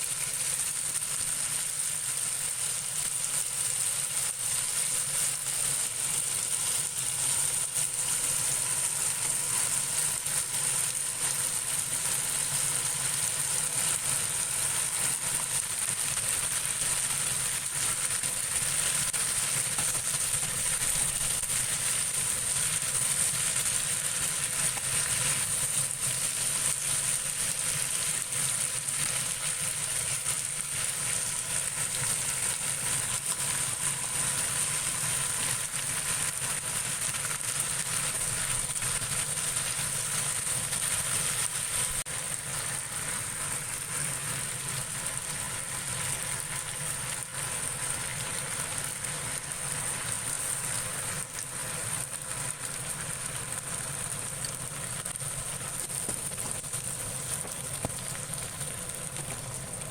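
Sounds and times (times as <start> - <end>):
food sizzling in a frying pan: 0.0 - 59.9.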